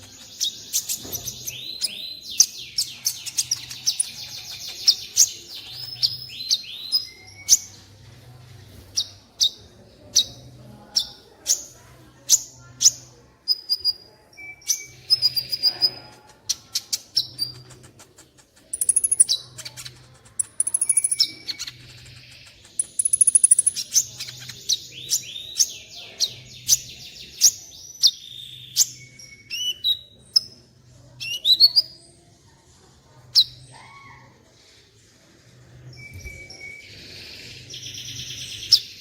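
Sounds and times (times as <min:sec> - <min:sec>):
sunbird singing: 0:18.7 - 0:19.6, 0:20.4 - 0:24.0.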